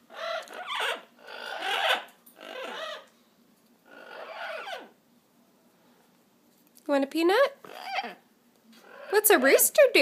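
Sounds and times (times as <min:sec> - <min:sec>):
parrot calling: 0:00.0 - 0:03.1, 0:03.8 - 0:05.0, 0:07.6 - 0:09.9.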